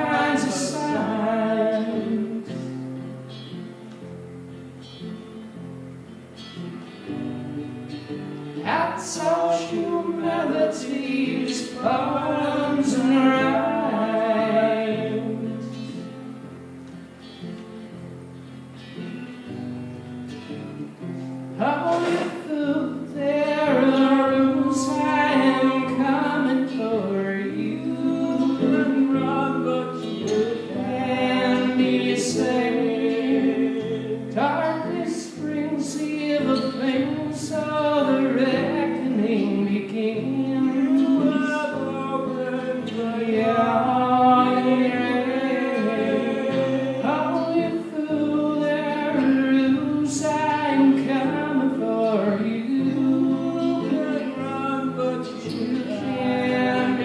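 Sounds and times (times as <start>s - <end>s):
person singing: 0.0s - 3.5s, 8.5s - 16.1s, 21.6s - 57.0s
guitar accompaniment: 0.0s - 57.0s.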